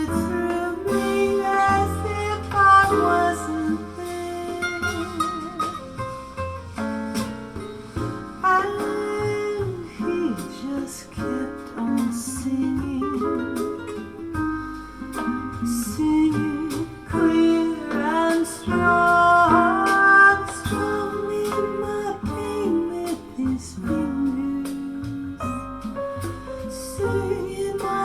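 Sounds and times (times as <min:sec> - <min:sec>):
person singing wordlessly: 0:00.0 - 0:05.6, 0:08.4 - 0:13.4, 0:15.6 - 0:25.6, 0:26.8 - 0:28.0
acoustic guitar music: 0:00.0 - 0:28.0.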